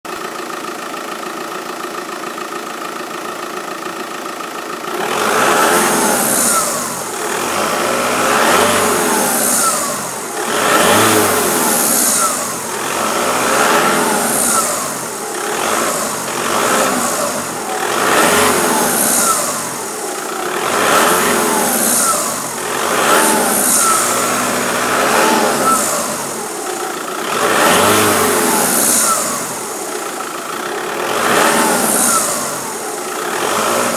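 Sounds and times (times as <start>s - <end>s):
car engine idling: 0.0s - 33.9s
engine revving: 4.9s - 33.9s
high hiss: 8.3s - 15.2s.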